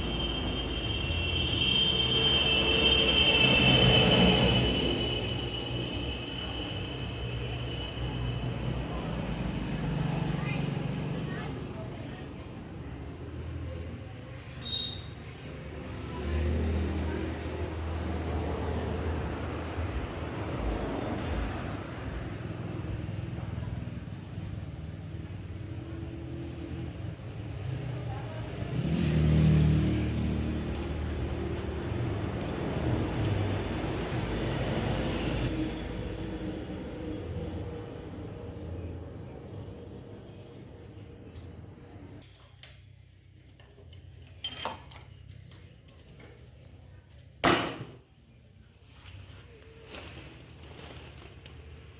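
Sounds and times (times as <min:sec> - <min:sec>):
metal tools clinking and knocking: 0:44.2 - 0:45.5, 0:49.0 - 0:50.4.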